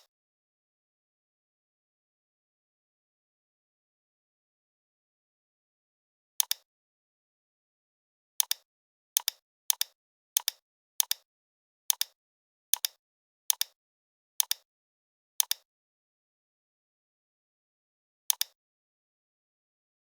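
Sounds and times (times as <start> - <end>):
computer mouse double clicks: 18.3 - 18.6.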